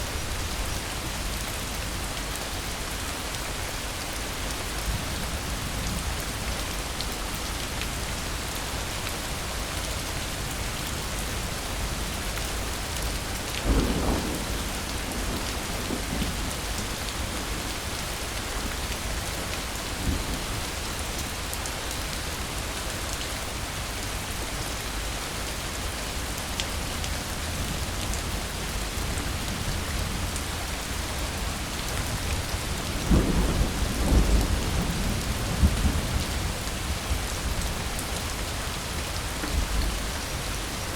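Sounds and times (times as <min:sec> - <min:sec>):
heavy rain: 0:00.0 - 0:40.9
thunder rumbling: 0:13.7 - 0:16.8.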